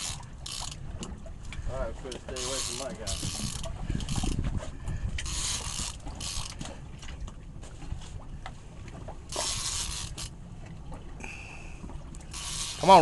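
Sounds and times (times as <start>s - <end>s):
fishing reel cranking: 0.0s - 0.8s, 2.1s - 4.4s, 5.2s - 6.7s, 9.3s - 10.4s, 12.3s - 13.0s
water splashing at boat: 0.0s - 13.0s
wind and water rumble: 0.0s - 13.0s.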